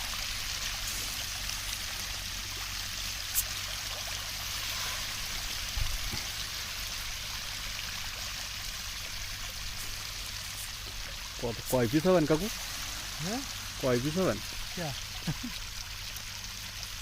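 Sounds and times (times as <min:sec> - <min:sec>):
running water: 0:00.0 - 0:17.0.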